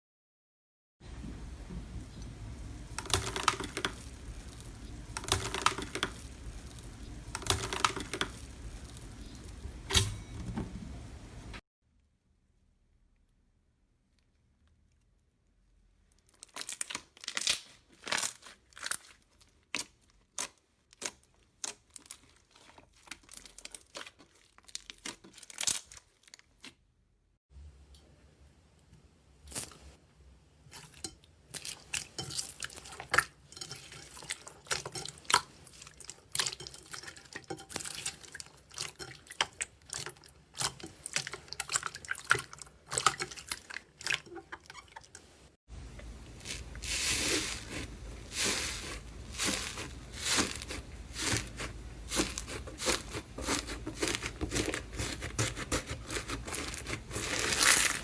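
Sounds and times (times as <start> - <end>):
slime crackling and popping: 2.9 - 9.6, 16.2 - 26.6, 46.3 - 58.0.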